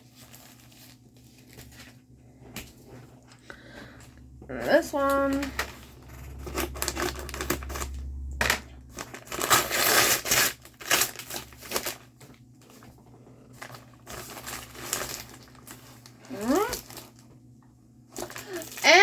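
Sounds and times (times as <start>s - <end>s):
packaging crinkling: 0.0s - 4.1s, 5.0s - 17.4s, 18.1s - 19.0s.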